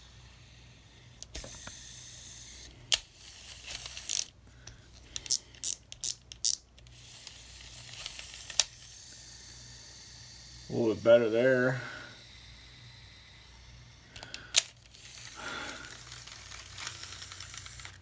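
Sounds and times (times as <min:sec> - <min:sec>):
fishing reel spool whirring: 0:00.0 - 0:18.0
sharp mechanical clicks and rattles: 0:01.1 - 0:09.7, 0:14.1 - 0:18.0.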